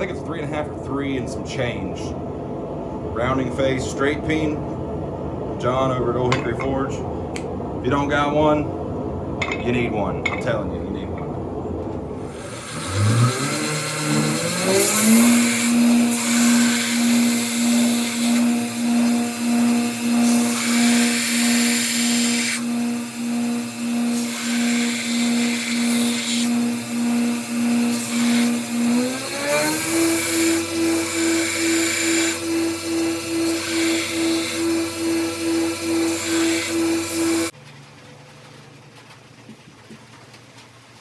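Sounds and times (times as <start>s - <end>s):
hiss: 12.2s - 23.3s, 24.0s - 26.7s
electric motor whining: 12.2s - 37.5s.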